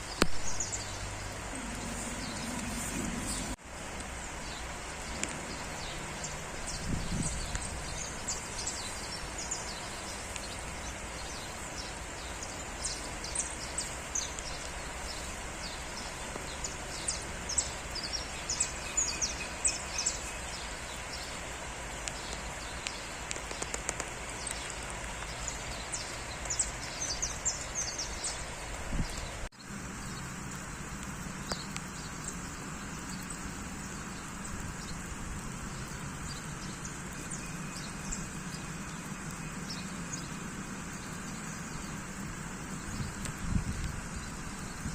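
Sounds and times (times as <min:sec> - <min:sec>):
birds chirping: 0:00.0 - 0:44.9
steady rain: 0:00.0 - 0:44.9
low hum: 0:00.6 - 0:03.6.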